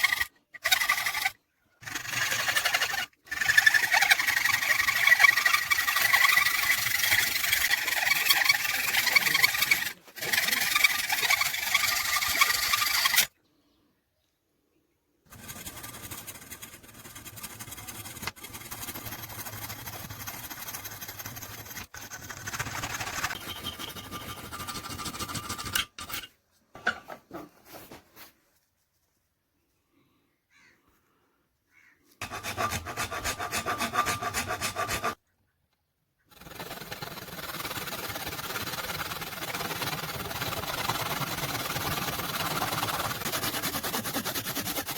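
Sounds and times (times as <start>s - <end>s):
abrasive rubbing and rasping: 0.0s - 13.3s, 32.2s - 35.2s, 36.3s - 44.9s.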